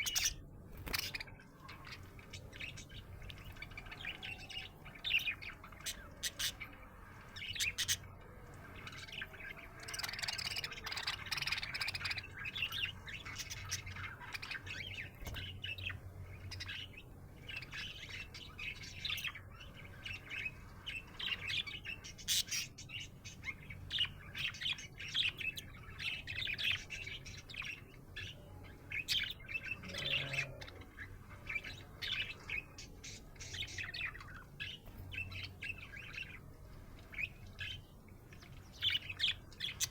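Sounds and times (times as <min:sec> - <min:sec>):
budgerigar chirping and warbling: 0:29.0 - 0:32.8.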